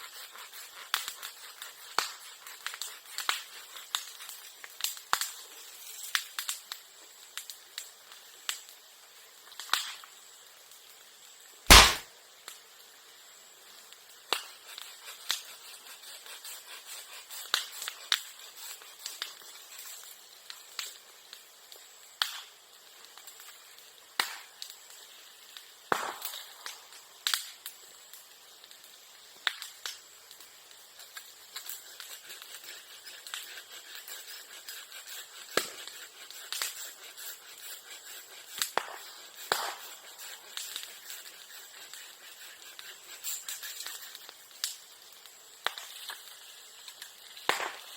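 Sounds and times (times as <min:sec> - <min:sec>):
bonfire crackling and popping: 0:00.0 - 0:47.9
bamboo bursting bang: 0:11.7 - 0:12.0.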